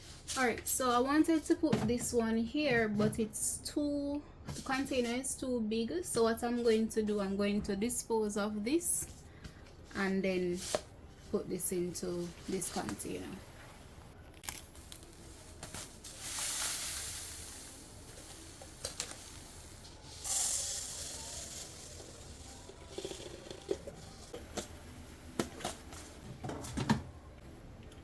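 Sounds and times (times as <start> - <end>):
containers clicking and knocking: 21.6 - 24.8.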